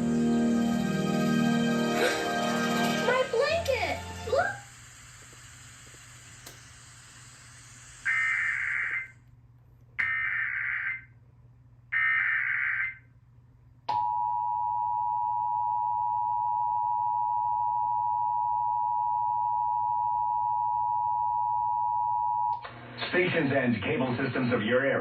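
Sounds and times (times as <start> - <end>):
digital data bursts: 8.0 - 9.1.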